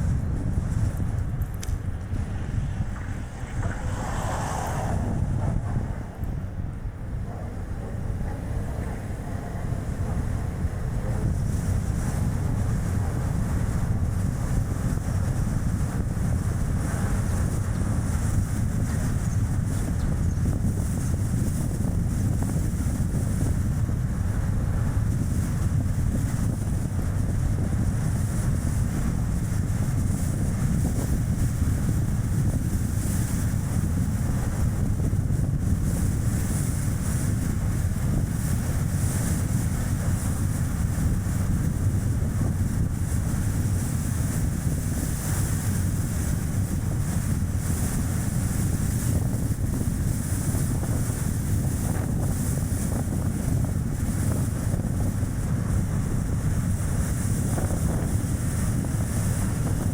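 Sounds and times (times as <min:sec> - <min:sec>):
tyres rumbling on road: 0:00.0 - 0:26.4
wind buffeting microphone: 0:00.0 - 0:59.9.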